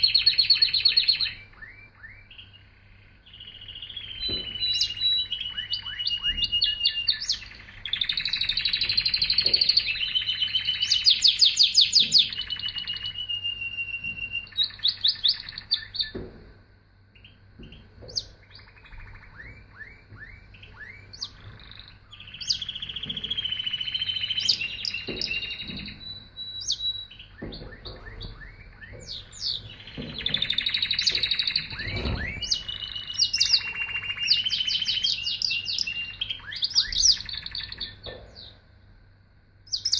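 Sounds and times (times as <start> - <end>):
canary singing trills: 0.0 - 16.4, 17.0 - 38.7, 39.6 - 39.9.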